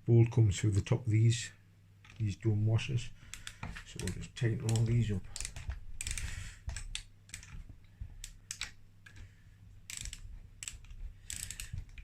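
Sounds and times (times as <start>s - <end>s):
faint low hum: 0.0s - 12.0s
wrench and socket clicking: 3.3s - 7.6s, 8.2s - 9.2s, 9.9s - 12.0s.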